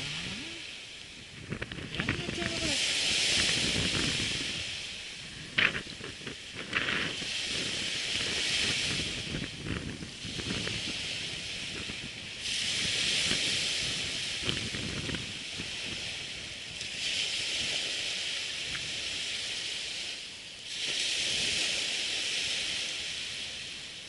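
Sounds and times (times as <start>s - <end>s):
wind buffeting microphone: 0.0s - 20.1s
surf washing onto sandy beach: 0.0s - 24.0s.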